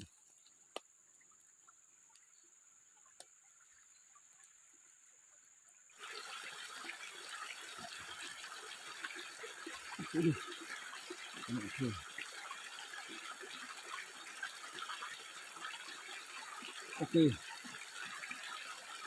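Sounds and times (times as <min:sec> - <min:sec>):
flowing water rushing: 0:05.9 - 0:19.0.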